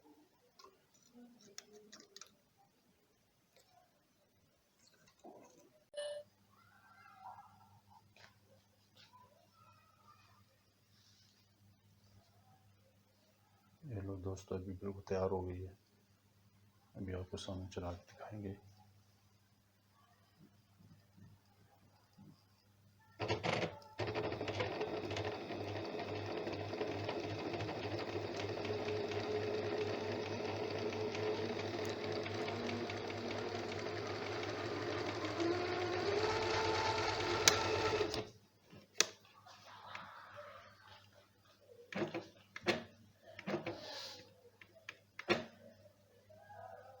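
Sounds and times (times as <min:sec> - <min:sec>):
sewing machine stitching rattle: 0:23.2 - 0:38.3.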